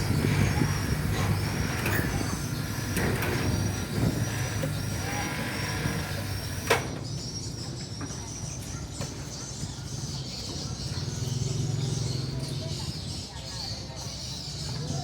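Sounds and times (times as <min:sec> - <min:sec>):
electric hoist motor humming: 0:00.0 - 0:07.0.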